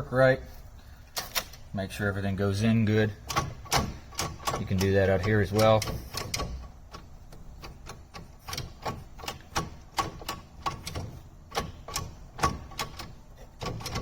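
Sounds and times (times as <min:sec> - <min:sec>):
gear shift lever clicking and clunking: 0:03.2 - 0:14.0.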